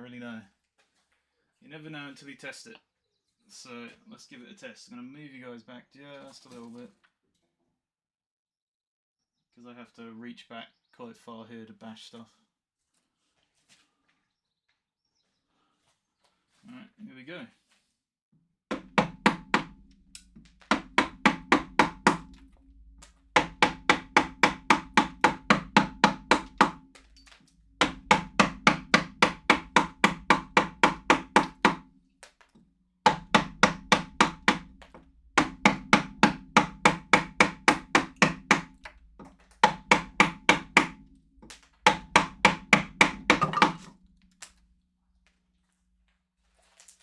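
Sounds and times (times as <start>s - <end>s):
hammer striking chisel into wood: 18.7s - 22.6s, 23.4s - 32.4s, 33.1s - 44.1s.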